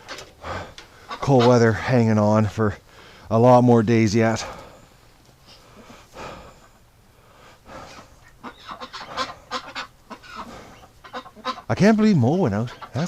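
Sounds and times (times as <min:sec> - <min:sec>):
geese honking: 0:00.0 - 0:04.6, 0:07.6 - 0:13.0.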